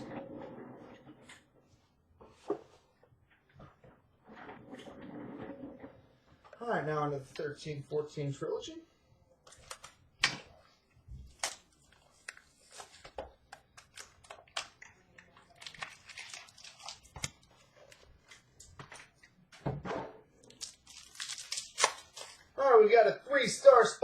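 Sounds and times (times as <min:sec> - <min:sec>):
cards clicking and rustling: 0:09.5 - 0:10.5, 0:11.3 - 0:19.0
wrapper tearing and crinkling: 0:11.3 - 0:13.0, 0:13.8 - 0:18.0, 0:20.4 - 0:22.5.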